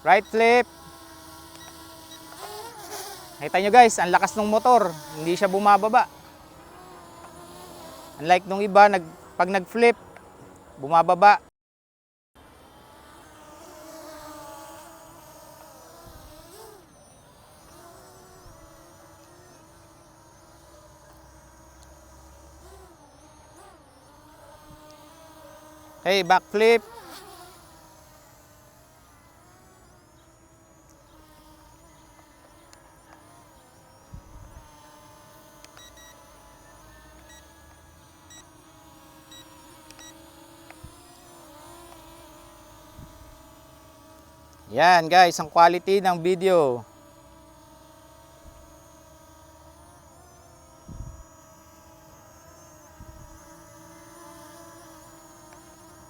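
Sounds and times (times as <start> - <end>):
quadcopter propellers buzzing: 0.0 - 11.5, 12.4 - 56.0
short beeps: 35.8 - 36.2.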